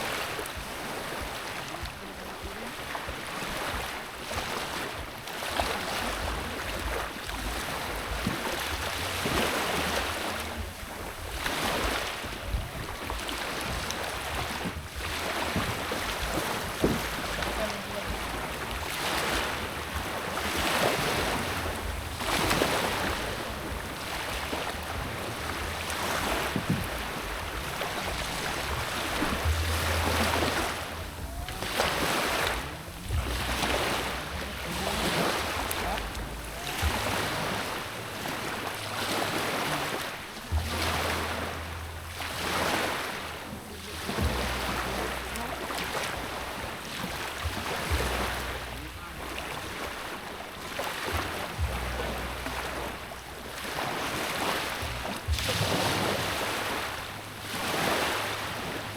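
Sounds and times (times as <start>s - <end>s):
sea waves washing: 0.0s - 58.9s
wind rumbling on microphone: 0.0s - 58.9s.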